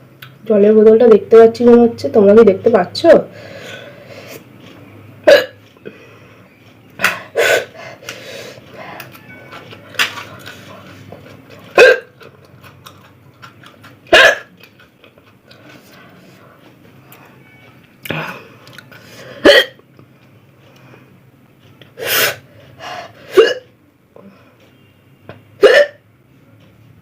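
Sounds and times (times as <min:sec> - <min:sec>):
person hiccuping: 0:05.2 - 0:05.6, 0:11.7 - 0:12.2, 0:14.1 - 0:14.6, 0:19.4 - 0:19.8, 0:23.3 - 0:23.8, 0:25.6 - 0:26.0.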